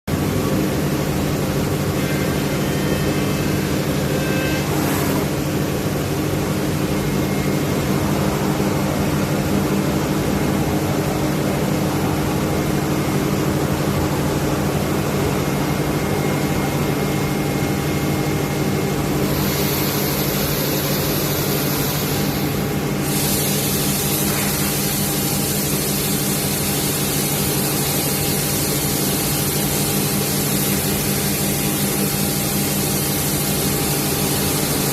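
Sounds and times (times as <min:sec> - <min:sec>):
loud high hiss: 0:19.2 - 0:34.9.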